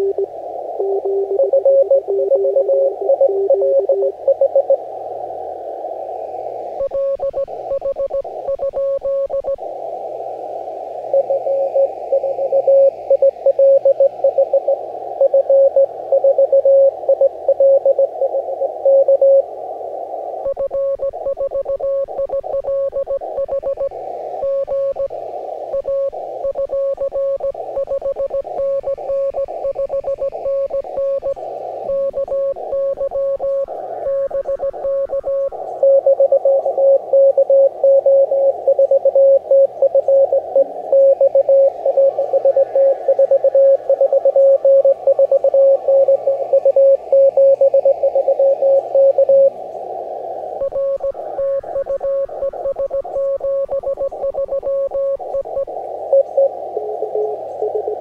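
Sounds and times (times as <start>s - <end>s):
morse code tone: 0.0s - 4.8s, 50.6s - 58.0s
faint morse code stations: 0.0s - 5.6s, 6.7s - 58.0s
receiver hiss: 0.0s - 58.0s.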